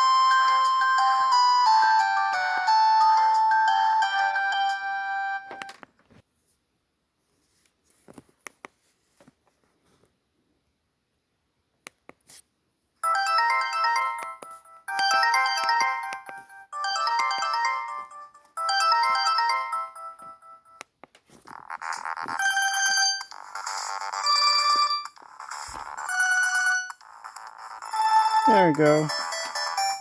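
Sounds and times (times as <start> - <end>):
phone ringtone melody: 0.0 - 5.7, 13.0 - 20.8, 21.8 - 30.0.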